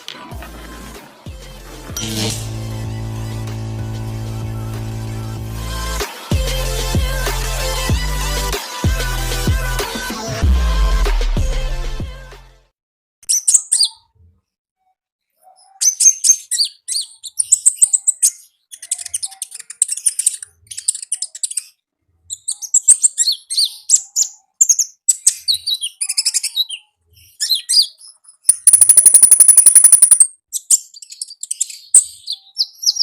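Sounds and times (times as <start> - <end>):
songbird chirping: 22.4 - 33.0.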